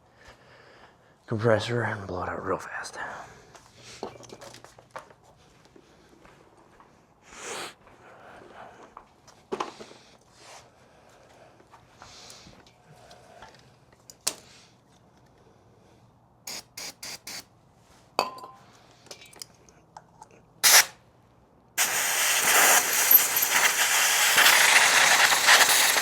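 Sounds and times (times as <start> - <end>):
compressed air blow gun hissing: 16.5 - 17.5, 20.6 - 21.0, 21.8 - 26.0.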